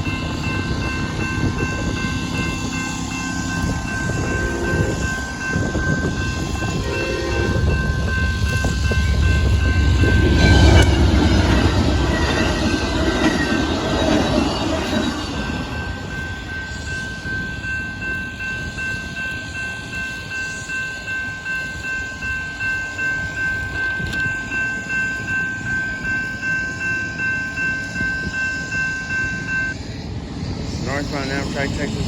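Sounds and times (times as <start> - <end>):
steady high ringing tones: 0.0 - 32.0
train wheels rumbling on rails: 0.0 - 32.0.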